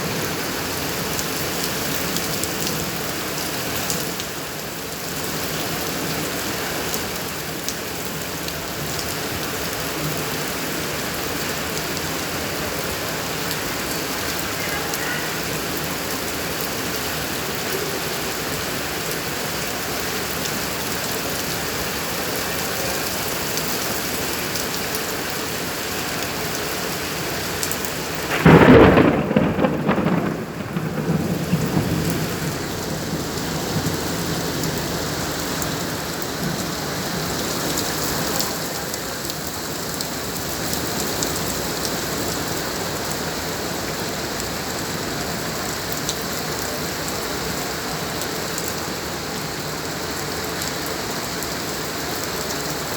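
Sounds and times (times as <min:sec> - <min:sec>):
steady rain: 0:00.0 - 0:52.9
thunder clap and rumble: 0:28.2 - 0:35.4.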